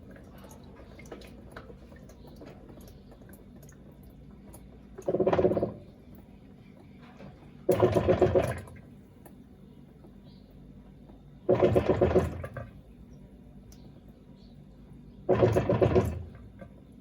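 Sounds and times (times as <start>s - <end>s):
quiet water trickle: 0.0s - 7.7s, 8.4s - 17.0s
washing machine agitating: 0.0s - 14.3s, 14.9s - 17.0s.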